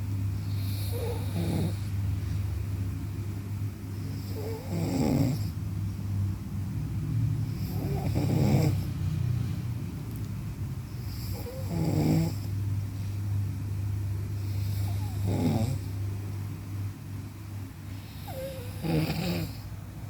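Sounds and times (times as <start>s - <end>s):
steady low hum: 0.0s - 20.0s
person snoring: 18.2s - 19.6s.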